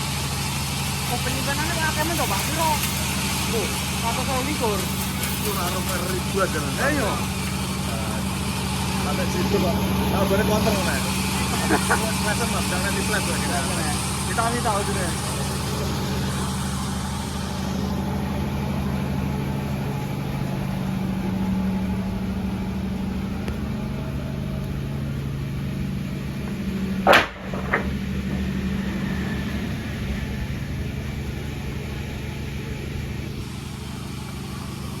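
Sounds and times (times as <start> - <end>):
engine idling: 0.0 - 35.0
sharp loud knock: 27.0 - 28.1.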